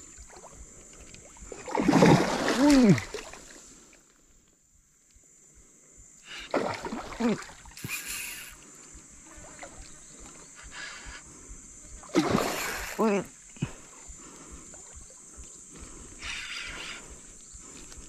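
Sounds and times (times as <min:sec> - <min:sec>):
water splashing: 0:00.0 - 0:03.6, 0:06.5 - 0:08.5, 0:11.9 - 0:16.0.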